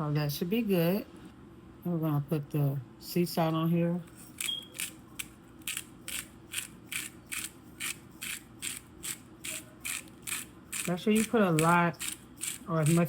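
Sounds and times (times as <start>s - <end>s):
salt grinder crunching: 4.4s - 13.0s.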